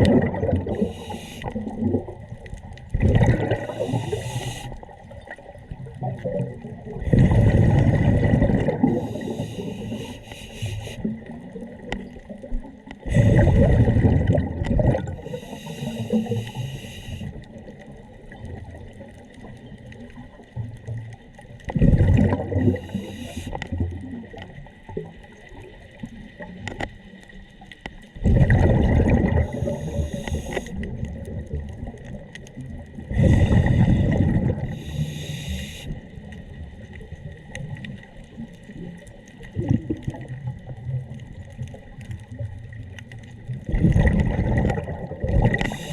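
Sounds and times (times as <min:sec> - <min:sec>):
exhaled bubbles gushing: 0:00.0 - 0:26.8, 0:28.2 - 0:45.9
regulator hiss: 0:00.8 - 0:01.7, 0:03.7 - 0:04.9, 0:09.0 - 0:11.1, 0:15.2 - 0:17.4, 0:22.6 - 0:23.6, 0:29.5 - 0:30.8, 0:34.7 - 0:36.0, 0:45.6 - 0:45.9.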